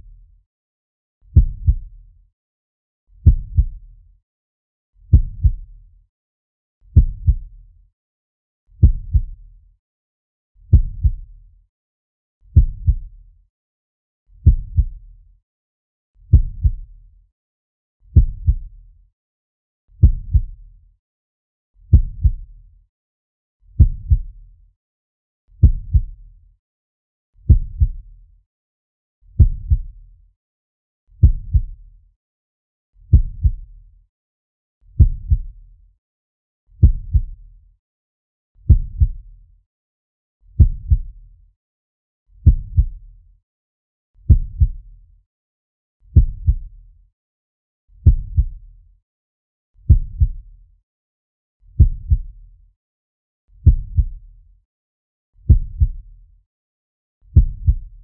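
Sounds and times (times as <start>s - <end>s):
slow heartbeat thumps: 1.4s - 1.9s, 3.2s - 3.8s, 5.1s - 5.6s, 7.0s - 7.5s, 8.8s - 9.4s, 10.7s - 11.2s, 12.6s - 13.1s, 14.4s - 15.0s, 16.3s - 16.8s, 18.2s - 18.7s, 20.0s - 20.6s, 21.9s - 22.4s, 23.8s - 24.3s, 25.6s - 26.2s, 27.5s - 28.0s, 29.4s - 29.9s, 31.2s - 31.8s, 33.1s - 33.6s, 35.0s - 35.5s, 36.8s - 37.4s, 38.7s - 39.2s, 40.6s - 41.1s, 42.4s - 43.0s, 44.3s - 44.8s, 46.2s - 46.7s, 48.0s - 48.6s, 49.9s - 50.3s, 51.8s - 52.3s, 53.6s - 54.1s, 55.5s - 56.0s, 57.4s - 58.0s.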